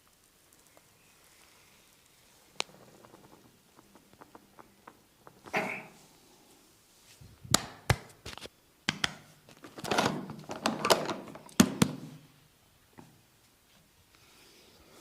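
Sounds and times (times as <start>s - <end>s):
massage taps and thuds: 11.6s - 12.2s.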